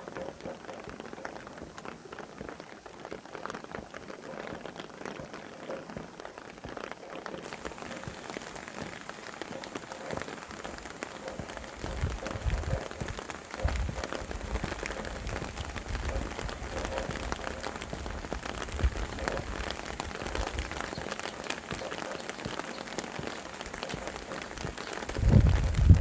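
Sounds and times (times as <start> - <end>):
rain pattering: 0.0 - 26.0
wind rumbling: 7.5 - 22.0, 23.6 - 26.0.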